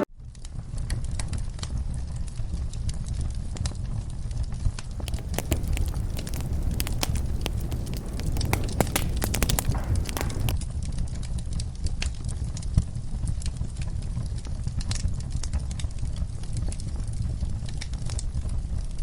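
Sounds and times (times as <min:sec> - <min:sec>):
fire crackling and popping: 0:04.8 - 0:10.6
low rumble of fire: 0:04.8 - 0:10.6.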